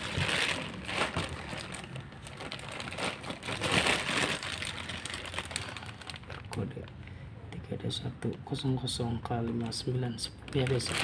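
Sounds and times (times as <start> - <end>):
plastic packaging crinkling: 0.0 - 7.0, 9.3 - 11.0.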